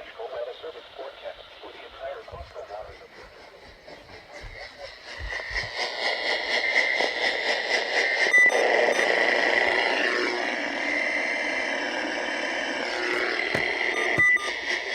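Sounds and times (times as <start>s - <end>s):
radio static hiss: 0.0s - 2.6s, 12.8s - 14.6s
sharp beep: 8.3s - 9.2s, 13.0s - 14.6s.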